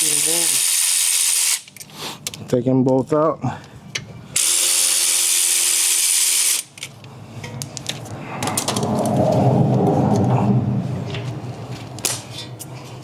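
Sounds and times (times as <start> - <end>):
powered ratchet spinning: 0.0 - 1.7, 4.4 - 6.7.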